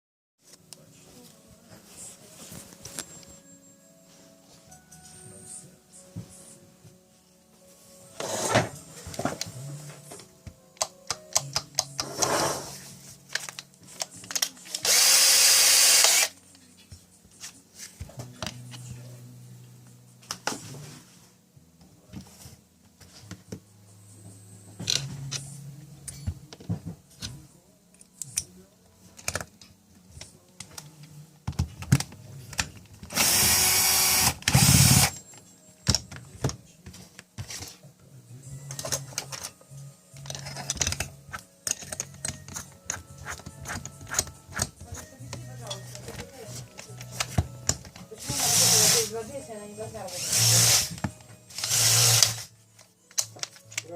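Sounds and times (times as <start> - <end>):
cordless drill running: 14.8 - 16.3, 33.1 - 35.2, 48.2 - 49.1, 50.2 - 50.9, 51.5 - 52.4
handling clicks and knocks: 40.2 - 48.1.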